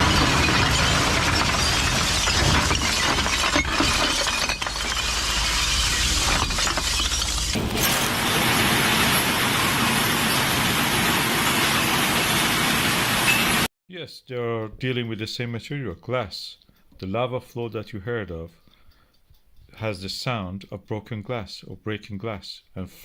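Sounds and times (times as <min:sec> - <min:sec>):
glass bottles shattering: 0:00.0 - 0:10.5.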